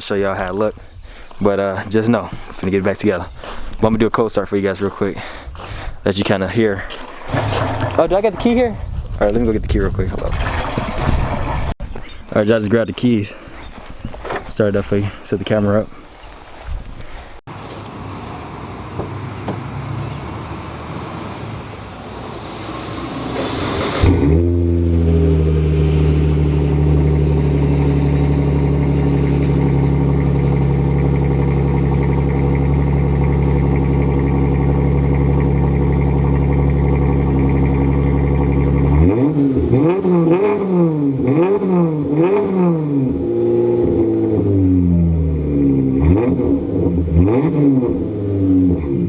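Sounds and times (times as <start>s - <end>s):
car engine cranking and idling: 0.0s - 49.0s
car engine revving: 6.9s - 8.8s, 18.5s - 49.0s.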